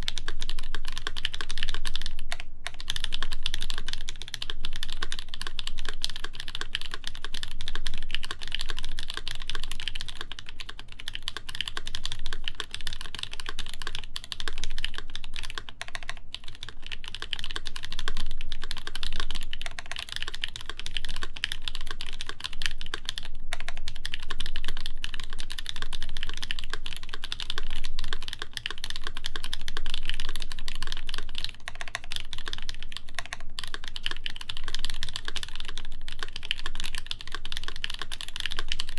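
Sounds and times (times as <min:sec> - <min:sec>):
fast typing on mechanical keyboard: 0:00.0 - 0:38.9.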